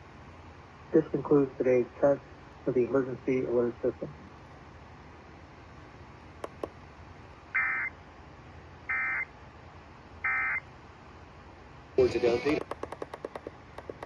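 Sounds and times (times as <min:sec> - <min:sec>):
faint clicks: 0:06.4 - 0:06.8
buzzy digital data tones: 0:12.0 - 0:12.6.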